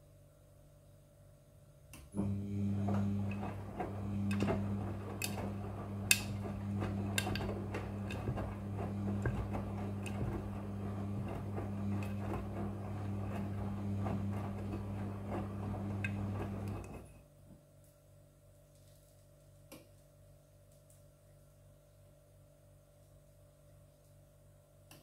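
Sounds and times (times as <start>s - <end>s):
washing machine motor hum: 2.0s - 17.2s.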